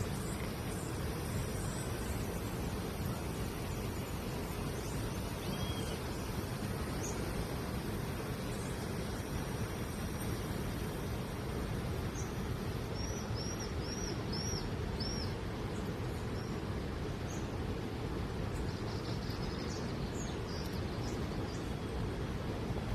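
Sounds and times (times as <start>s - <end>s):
low background noise: 0.0s - 22.9s
bird chirping: 3.2s - 7.2s.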